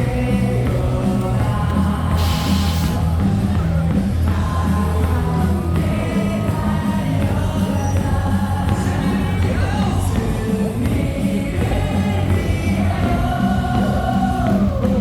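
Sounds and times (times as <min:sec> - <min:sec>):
crowd singing along: 0:00.0 - 0:15.0
music over loudspeakers: 0:00.0 - 0:15.0.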